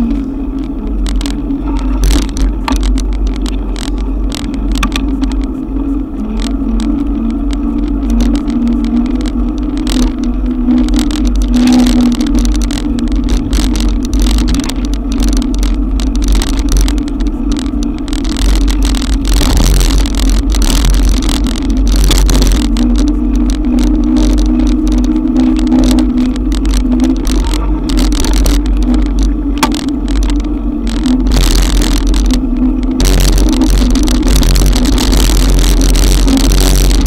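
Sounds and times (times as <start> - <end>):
steady wavering hum: 0.0 - 37.0
wind and road rumble: 0.0 - 37.0
sharp taps and clicks: 7.4 - 32.4.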